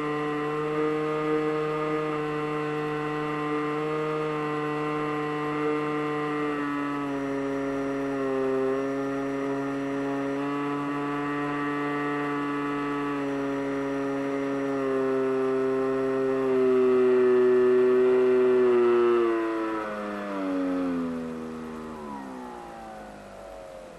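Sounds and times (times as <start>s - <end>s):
model plane motor droning: 0.0s - 23.9s.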